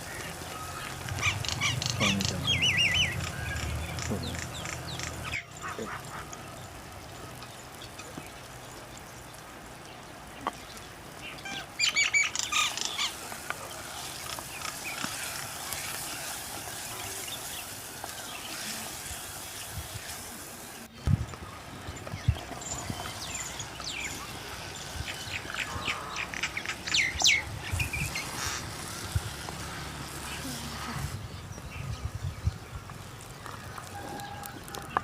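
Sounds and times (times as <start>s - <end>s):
bird high calls: 0.0s - 6.8s, 11.2s - 13.2s, 21.5s - 28.7s
steady outdoor hiss: 0.0s - 35.0s.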